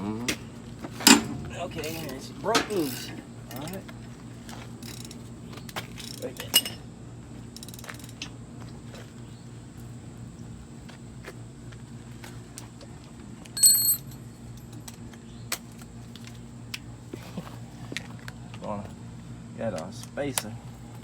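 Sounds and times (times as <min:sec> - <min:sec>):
steady low hum: 0:00.0 - 0:21.0
ringing metal clink: 0:13.6 - 0:14.2.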